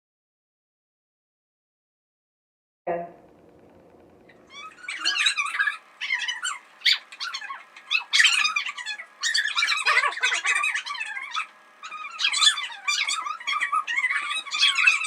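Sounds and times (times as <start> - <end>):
children squealing and shrieking: 4.5 - 15.0.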